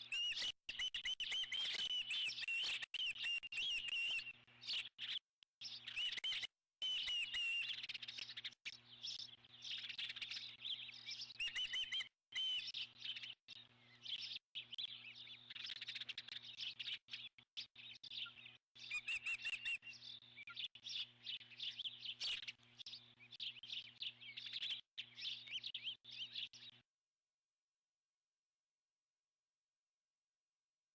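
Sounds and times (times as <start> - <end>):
eagles chirping: 18.9 - 19.8.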